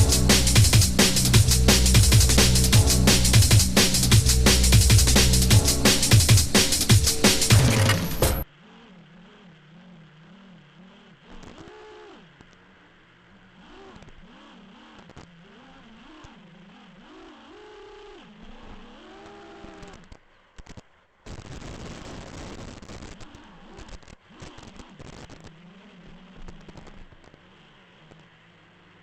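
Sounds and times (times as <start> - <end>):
loud rough hiss: 0.0 - 8.4.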